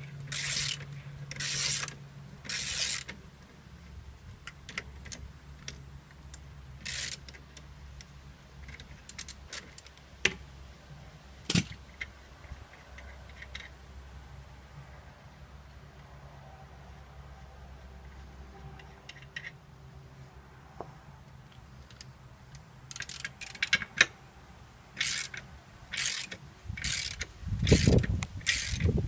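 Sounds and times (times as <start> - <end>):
metal parts clinking and scraping: 0.0 - 3.2, 6.8 - 7.4, 22.9 - 24.1, 25.0 - 29.0.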